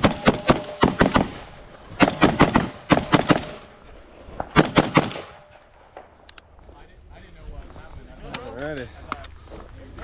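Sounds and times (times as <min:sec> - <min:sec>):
rifle shots: 0:00.0 - 0:06.3.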